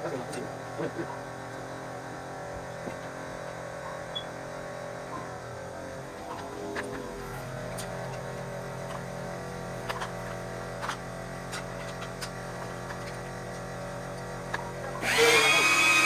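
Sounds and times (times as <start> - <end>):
vacuum cleaner motor whine: 13.4 - 16.0.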